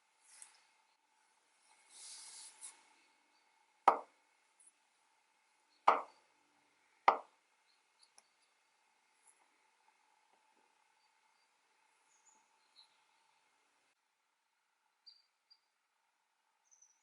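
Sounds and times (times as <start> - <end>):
sharp knocks on wood: 3.9 - 4.1, 5.9 - 6.2, 7.1 - 7.3.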